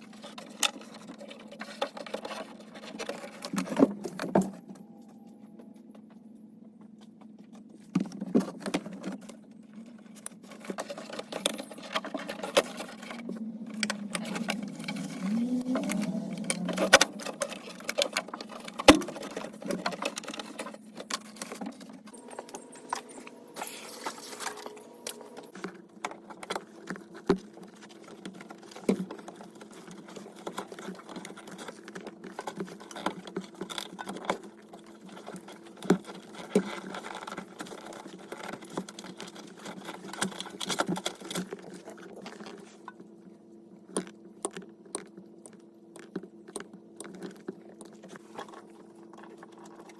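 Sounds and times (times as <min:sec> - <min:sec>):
steady low hum: 0:09.8 - 0:30.4.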